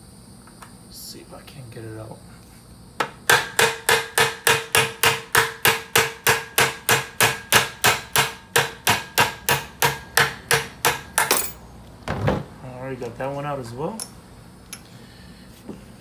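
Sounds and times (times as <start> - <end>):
hammer striking metal punch: 3.0 - 11.6.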